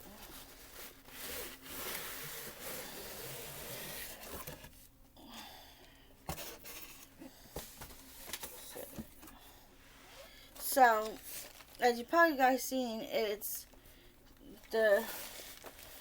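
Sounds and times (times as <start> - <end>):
packaging rustling: 11.0 - 11.8, 15.1 - 16.0.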